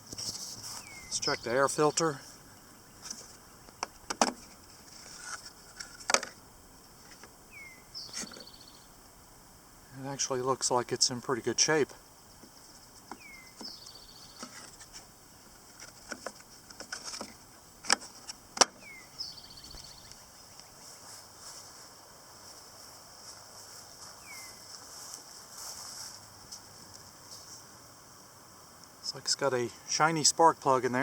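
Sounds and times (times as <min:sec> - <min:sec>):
bird chirp with trill: 0:00.7 - 0:04.0, 0:07.5 - 0:08.9, 0:13.1 - 0:14.6, 0:18.8 - 0:21.0, 0:24.2 - 0:24.6
clicks and knocks of engine parts: 0:05.2 - 0:06.4.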